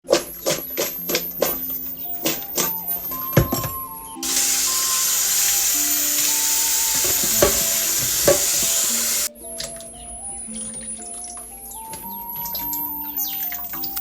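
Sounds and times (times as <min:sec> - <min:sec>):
light background music: 0:00.0 - 0:14.0
oil popping: 0:04.2 - 0:09.3
plantain sizzling in hot oil: 0:04.2 - 0:09.3.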